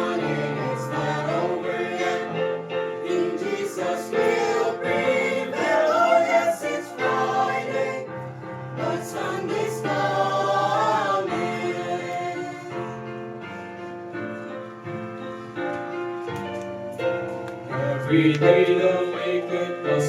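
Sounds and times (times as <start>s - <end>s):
choir singing gospel song: 0.0s - 13.6s, 17.6s - 20.0s
recorded backing music: 0.0s - 20.0s.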